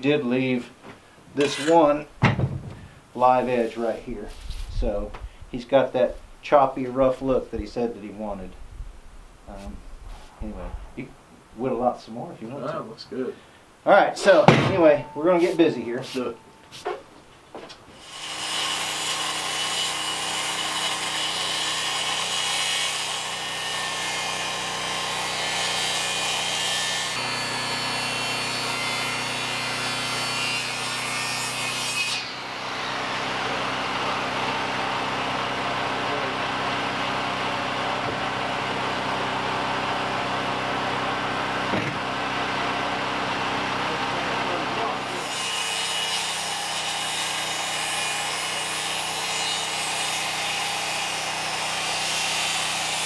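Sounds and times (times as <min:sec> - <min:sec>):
power tool cutting wood: 0:01.4 - 0:04.0, 0:18.0 - 0:53.0.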